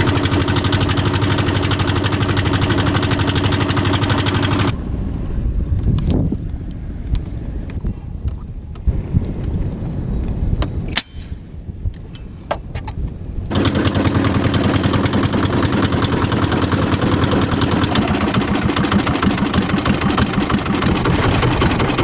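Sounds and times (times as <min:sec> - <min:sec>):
small boat engine chugging: 0:00.0 - 0:04.7, 0:13.5 - 0:22.0
wind noise: 0:04.7 - 0:13.5.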